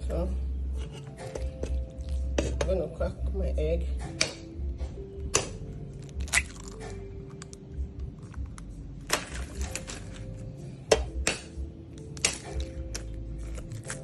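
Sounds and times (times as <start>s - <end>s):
egg shell cracking: 5.3s - 10.2s.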